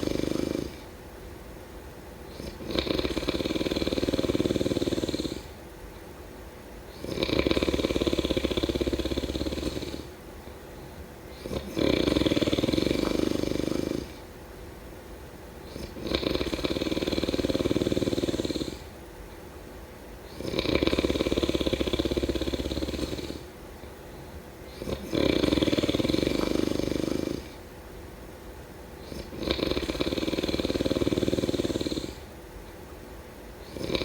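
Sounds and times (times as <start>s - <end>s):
person snoring: 0.0s - 0.9s, 2.3s - 5.6s, 6.9s - 10.2s, 11.3s - 14.2s, 15.7s - 18.9s, 20.3s - 23.5s, 24.7s - 27.6s, 29.0s - 32.3s, 33.7s - 34.0s.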